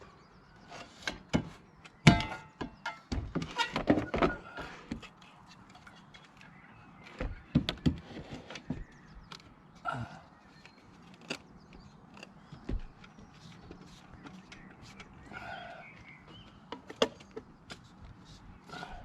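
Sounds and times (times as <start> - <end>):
hollow thunks and knocks: 7.2 - 9.0, 12.6 - 13.1.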